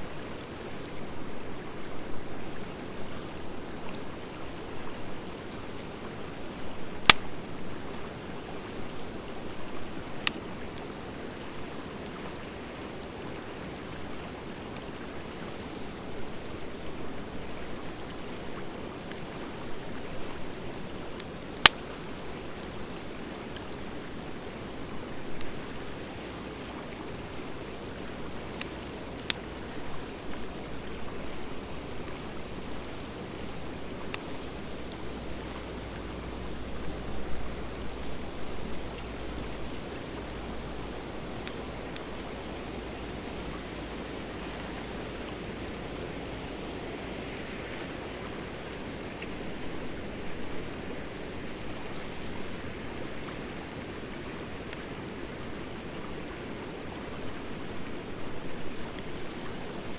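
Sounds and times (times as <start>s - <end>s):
campfire hissing: 0.0s - 59.9s
crackling pops of fire: 5.9s - 11.6s, 16.4s - 36.2s, 37.3s - 47.5s.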